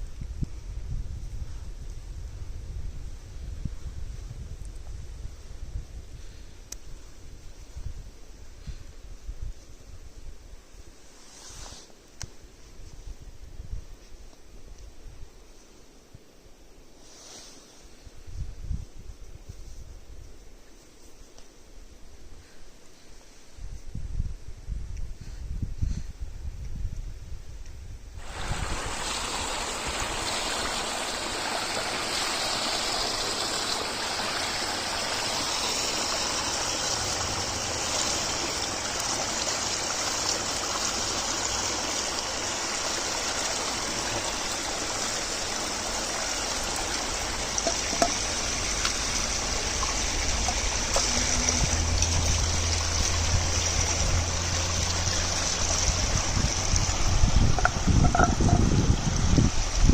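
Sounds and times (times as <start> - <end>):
running spring water: 28.2 - 59.9
low hum: 47.0 - 59.0.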